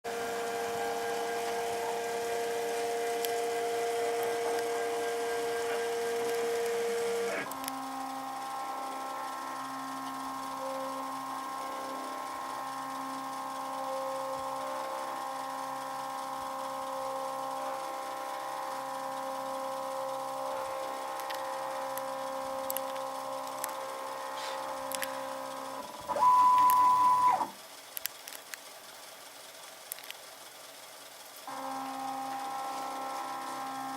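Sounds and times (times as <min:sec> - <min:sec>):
router motor whine: 0:00.0 - 0:28.4, 0:31.2 - 0:33.9.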